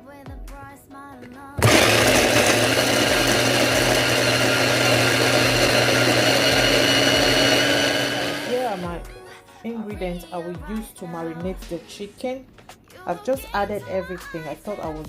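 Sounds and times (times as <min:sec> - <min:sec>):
electric blender running: 0:01.6 - 0:09.0.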